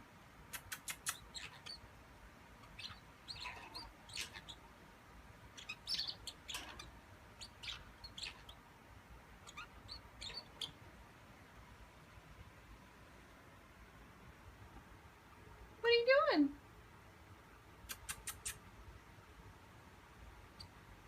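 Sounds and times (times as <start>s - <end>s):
bird chirping: 0.5s - 1.9s, 2.6s - 4.7s, 5.4s - 8.7s, 9.3s - 10.9s, 20.4s - 21.0s.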